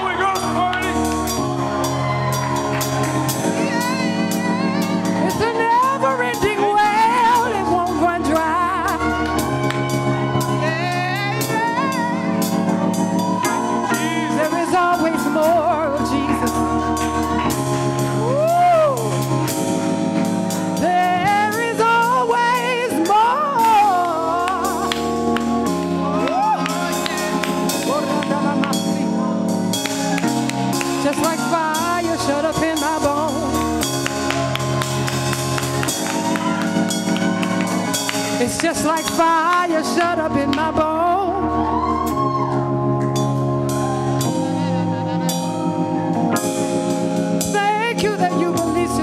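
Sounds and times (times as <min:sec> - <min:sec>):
sustained chords and bass: 0:00.0 - 0:49.0
person singing: 0:03.1 - 0:19.4, 0:20.8 - 0:25.3, 0:26.0 - 0:29.4, 0:30.8 - 0:35.2, 0:47.4 - 0:49.0.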